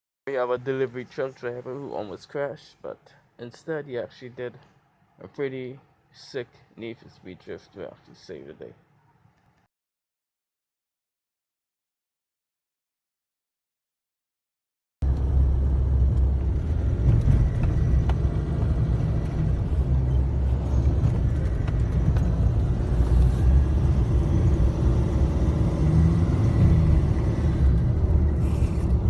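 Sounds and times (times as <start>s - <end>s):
road vehicles rumbling: 15.0s - 29.0s.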